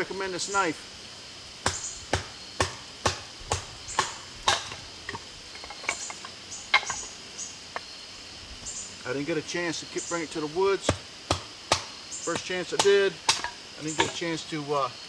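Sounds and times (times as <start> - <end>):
knife knocking splitting wood: 10.9 - 14.2.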